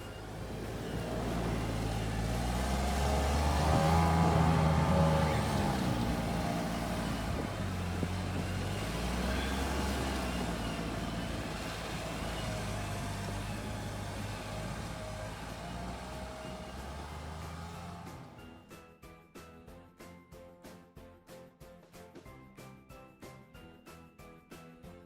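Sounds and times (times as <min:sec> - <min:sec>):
vehicle engine running: 0:00.0 - 0:18.6.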